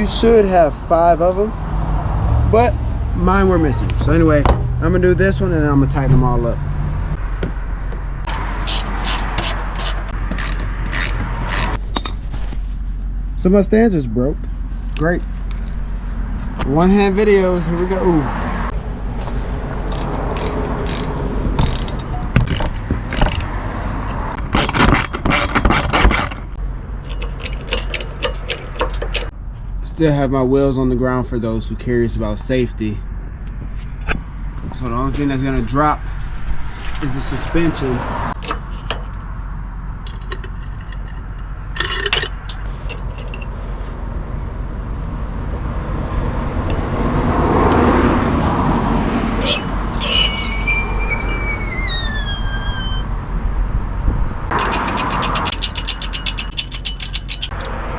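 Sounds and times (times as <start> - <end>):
hand ratchet clicking: 8.3 - 11.8, 19.9 - 23.5, 54.5 - 57.7
rattling clatter: 9.4 - 12.7, 19.1 - 29.3, 54.5 - 57.8
metallic clicks and clinks: 54.5 - 57.8.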